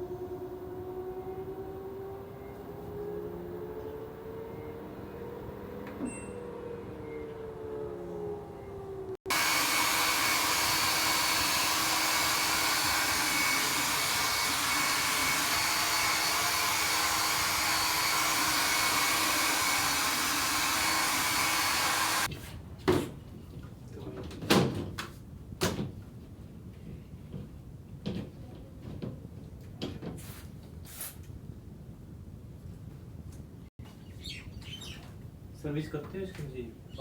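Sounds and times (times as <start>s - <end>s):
electric blower motor rushing: 0.0s - 22.3s.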